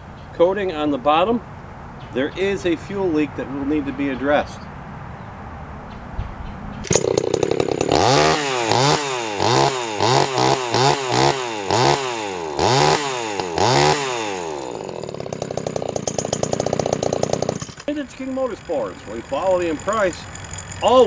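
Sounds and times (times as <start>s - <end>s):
chainsaw engine revving: 6.8s - 21.0s.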